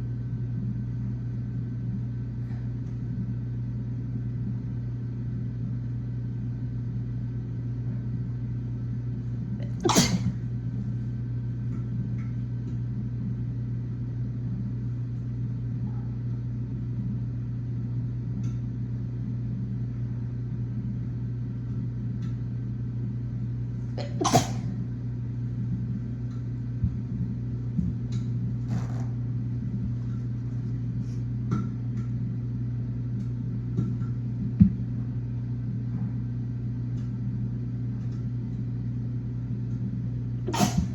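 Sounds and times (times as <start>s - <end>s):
steady low hum: 0.0s - 40.9s
woman sneezing: 9.6s - 10.4s, 24.0s - 24.8s, 40.5s - 40.9s.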